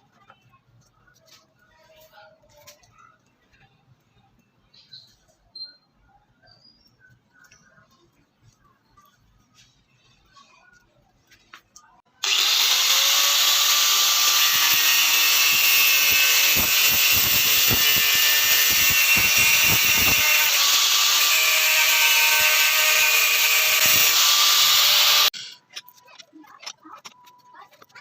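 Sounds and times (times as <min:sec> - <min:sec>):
electric power tool running: 0:12.2 - 0:25.3.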